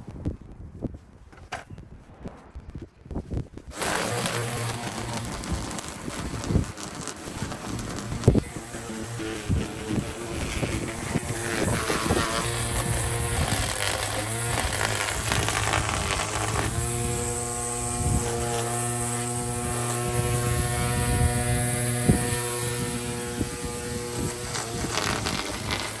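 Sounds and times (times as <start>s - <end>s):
motor humming: 3.7s - 26.0s.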